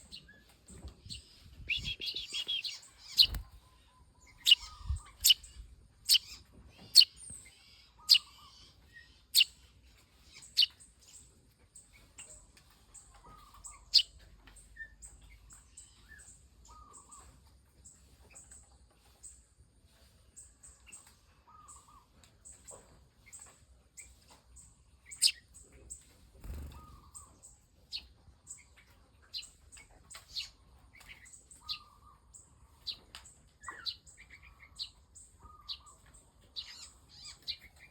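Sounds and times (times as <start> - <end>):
bird chick chirping: 0.0 - 9.7, 10.3 - 11.2, 12.1 - 17.4, 24.9 - 37.9.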